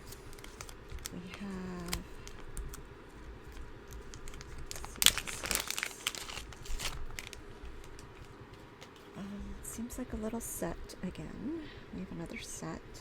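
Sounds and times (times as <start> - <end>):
plastic packaging crinkling: 0.0 - 9.1.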